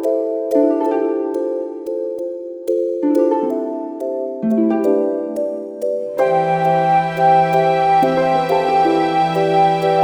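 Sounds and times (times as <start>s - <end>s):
soft instrumental keyboard music: 0.0s - 10.0s.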